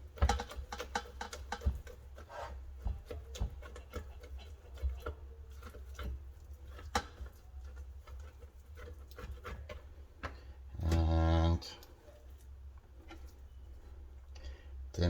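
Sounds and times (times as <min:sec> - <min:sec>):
grater taps: 0:00.0 - 0:11.0
egg scraping on a grater: 0:00.0 - 0:14.1.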